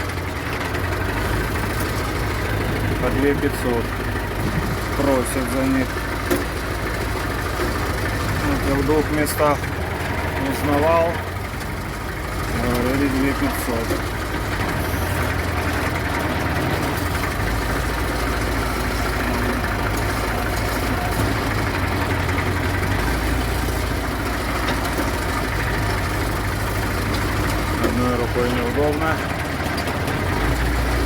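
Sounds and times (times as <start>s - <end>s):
tractor diesel engine running: 0.0s - 31.0s.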